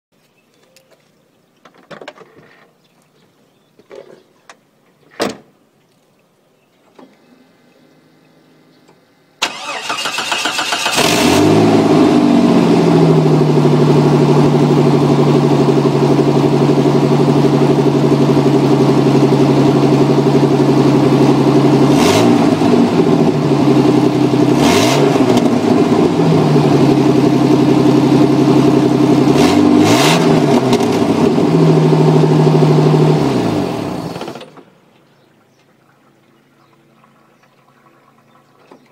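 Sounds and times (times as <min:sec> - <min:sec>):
car engine cranking and idling: 0:08.8 - 0:34.8.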